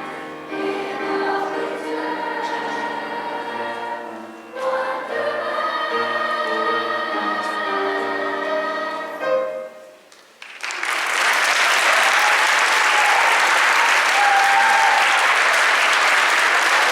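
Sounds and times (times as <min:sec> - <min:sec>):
choir with piano: 0:00.0 - 0:10.1
audience applause: 0:10.2 - 0:16.9.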